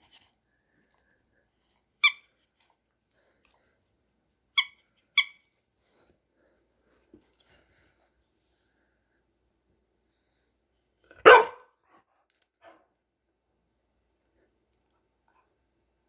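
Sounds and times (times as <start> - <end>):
squeaky dog toy squeaking: 2.0 - 2.3, 4.6 - 5.5.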